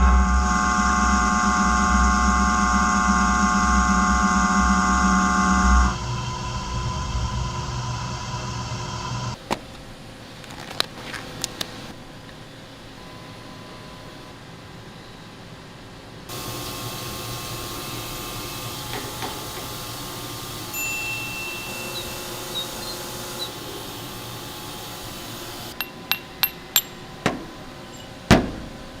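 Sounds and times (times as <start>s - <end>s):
grinding machine whirring: 0.0s - 9.4s, 16.3s - 28.2s
ringing metallic clinks: 20.7s - 23.4s, 25.8s - 27.1s, 27.9s - 28.2s.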